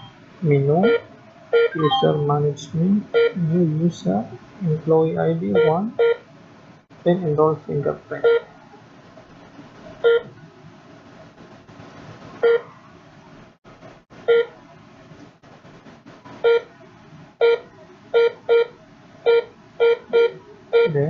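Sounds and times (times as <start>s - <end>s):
short electronic beeps: 1.6s - 2.3s, 5.5s - 6.2s.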